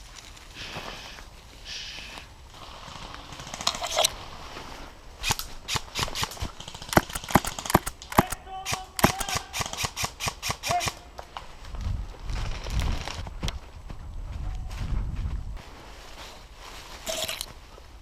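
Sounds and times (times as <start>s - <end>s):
airsoft gunfire: 6.8s - 8.4s, 9.0s - 9.4s.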